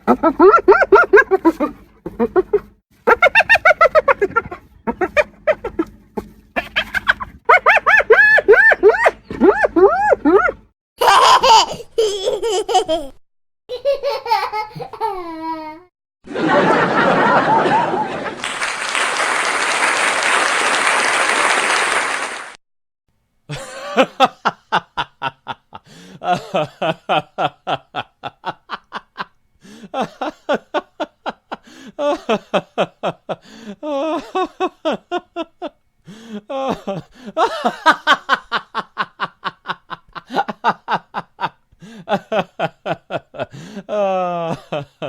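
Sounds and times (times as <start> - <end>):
person laughing: 0.0 - 6.0, 6.6 - 18.6, 23.5 - 45.0
applause-like noise: 17.4 - 22.6.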